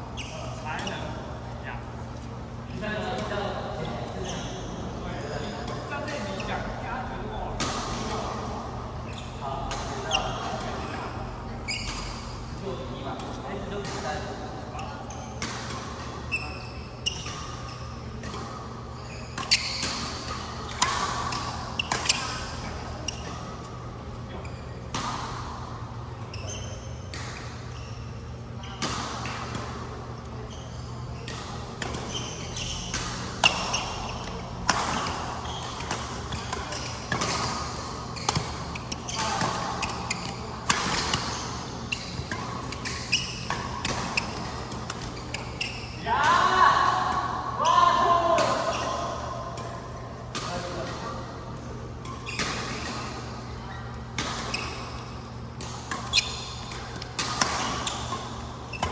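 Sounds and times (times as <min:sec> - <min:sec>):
low hum of hall: 0:00.0 - 0:58.9
shoes squeaking on court: 0:00.1 - 0:06.8, 0:09.0 - 0:46.1, 0:50.4 - 0:58.9
racket hitting shuttlecock: 0:32.8 - 0:47.2, 0:55.6 - 0:58.9.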